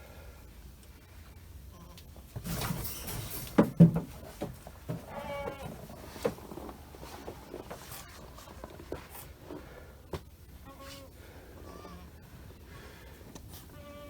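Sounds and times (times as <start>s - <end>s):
goat bleating: 4.9s - 5.9s, 10.6s - 12.2s.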